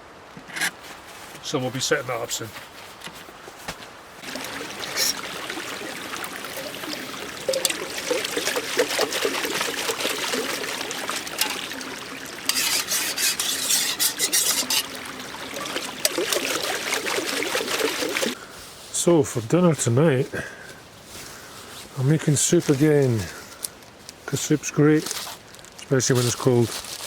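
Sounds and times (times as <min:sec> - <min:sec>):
crackling rustle: 0:00.0 - 0:11.7, 0:17.6 - 0:27.0
water trickling: 0:04.1 - 0:18.8.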